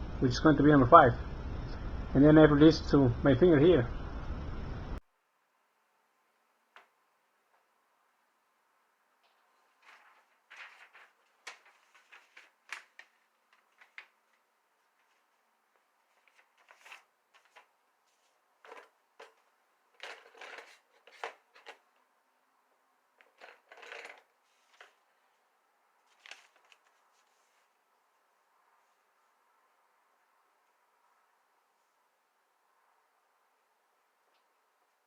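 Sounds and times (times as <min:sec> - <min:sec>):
handling clicks and rustles: 0:09.2 - 0:22.1, 0:23.1 - 0:25.4, 0:26.0 - 0:27.7.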